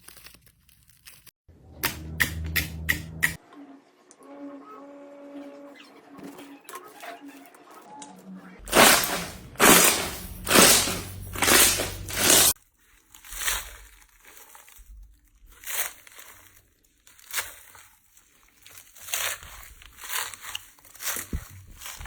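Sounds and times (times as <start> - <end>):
slime squishing and crunching: 0.0 - 1.3, 8.6 - 22.0.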